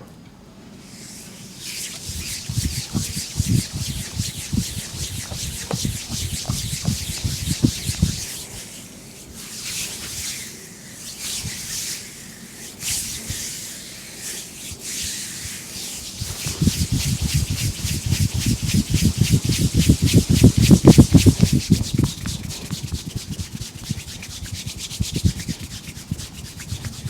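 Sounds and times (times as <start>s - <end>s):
hands rubbing over skin: 1.6s - 8.8s, 14.9s - 27.0s
soft patting thumps: 2.1s - 8.4s, 16.2s - 27.0s.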